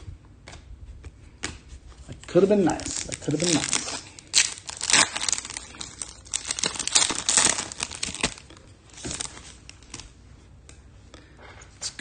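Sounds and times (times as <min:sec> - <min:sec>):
foil wrapper crinkling: 0:02.2 - 0:10.1.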